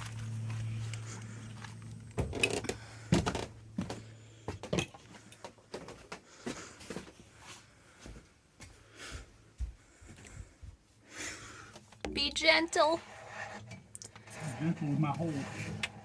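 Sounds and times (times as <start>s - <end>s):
steady low hum: 0.0s - 5.4s.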